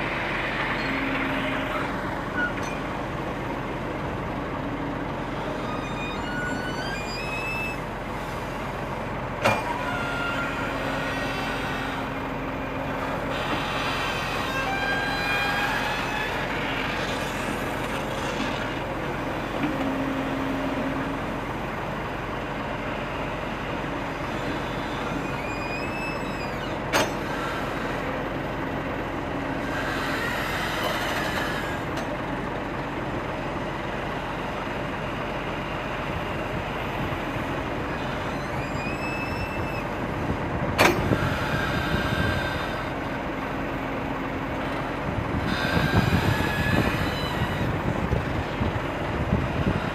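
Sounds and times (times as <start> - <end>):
excavator running: 0.0 - 49.9
brief squeals: 0.6 - 2.9, 5.4 - 8.6, 13.3 - 18.8, 24.3 - 27.9, 37.9 - 40.0, 45.5 - 47.7.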